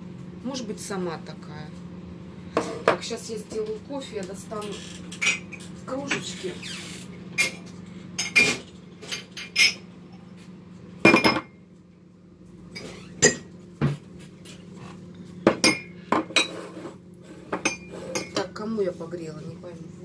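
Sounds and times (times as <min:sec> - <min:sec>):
mugs and cutlery clinking: 0:08.2 - 0:09.8, 0:15.5 - 0:16.8, 0:17.5 - 0:18.5.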